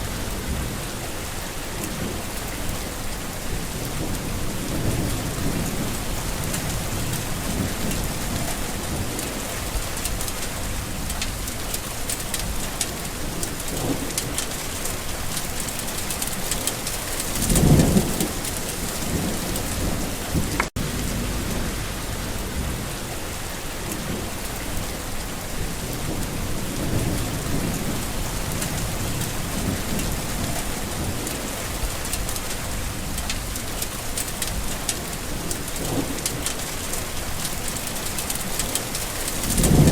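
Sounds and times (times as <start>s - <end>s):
rain falling: 0.0s - 39.9s
thunder rolling: 3.4s - 24.9s, 25.5s - 37.8s, 38.5s - 39.9s.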